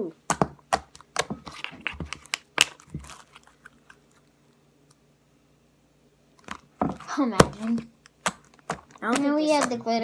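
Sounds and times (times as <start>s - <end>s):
slime squelching: 0.1s - 4.1s, 6.4s - 10.0s.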